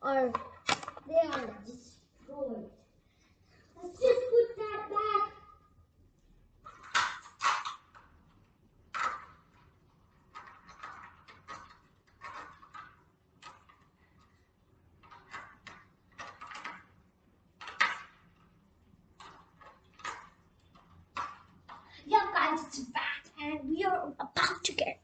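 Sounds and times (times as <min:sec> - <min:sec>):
toy car plastic clicks and rattles: 0:06.7 - 0:08.1, 0:08.9 - 0:17.0, 0:17.6 - 0:18.5, 0:19.2 - 0:22.0.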